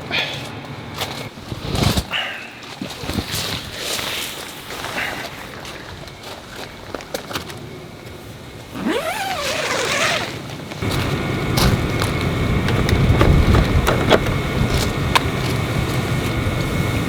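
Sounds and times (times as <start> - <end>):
wind buffeting microphone: 10.8 - 17.0.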